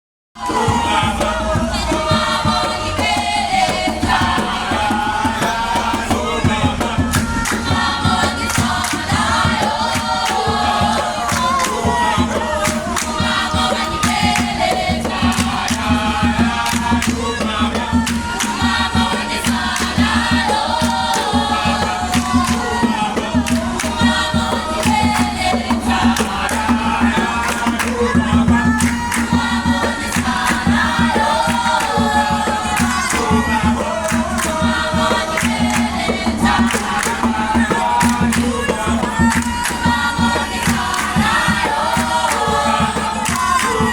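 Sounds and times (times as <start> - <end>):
children singing: 0.4 - 43.9
claps or stamps: 7.1 - 15.9, 19.2 - 43.9.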